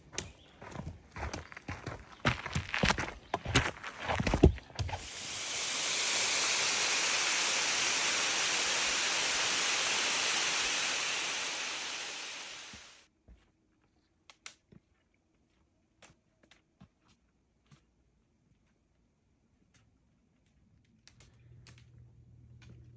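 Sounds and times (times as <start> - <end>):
steady rushing noise: 5.0 - 13.0.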